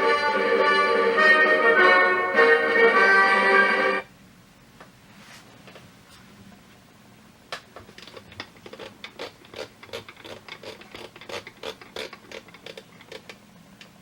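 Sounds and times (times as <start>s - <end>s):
small mechanical clicks and scrapes: 8.0s - 13.4s.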